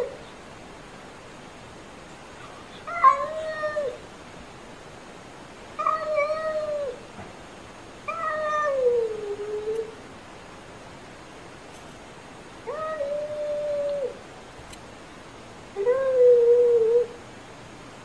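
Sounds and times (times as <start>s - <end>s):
cat meowing: 2.8s - 4.0s, 5.8s - 7.0s, 8.1s - 9.9s.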